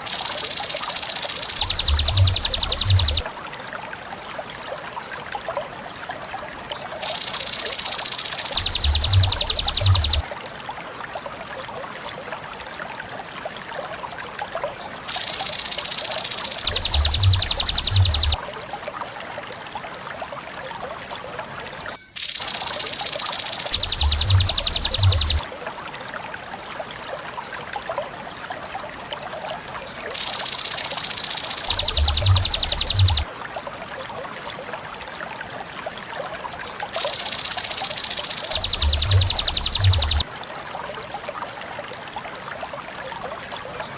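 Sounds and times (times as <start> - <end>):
bird calls: 0.0 - 3.2, 7.0 - 10.2, 15.1 - 18.4, 22.0 - 25.4, 30.1 - 33.3, 36.9 - 40.2
high rapid bird trill: 0.0 - 3.2, 7.0 - 10.2, 15.1 - 18.4, 22.0 - 25.4, 30.2 - 33.3, 37.0 - 40.2
insects chorus: 0.0 - 3.2, 7.0 - 10.2, 15.1 - 18.4, 22.2 - 25.4, 30.2 - 33.2, 37.0 - 40.2
frogs croaking: 0.0 - 3.3, 7.0 - 10.2, 15.0 - 18.4, 21.9 - 25.4, 30.1 - 33.3, 36.8 - 40.3.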